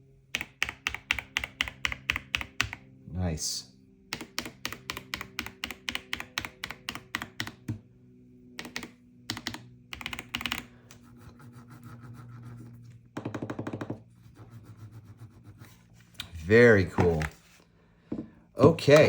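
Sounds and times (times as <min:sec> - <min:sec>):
mechanical keyboard typing: 0:00.3 - 0:02.8, 0:04.1 - 0:07.8, 0:08.6 - 0:11.1.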